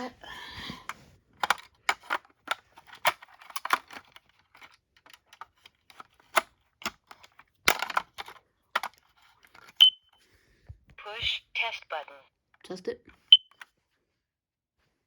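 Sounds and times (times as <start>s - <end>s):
plastic clicks and rattles: 1.4s - 9.9s.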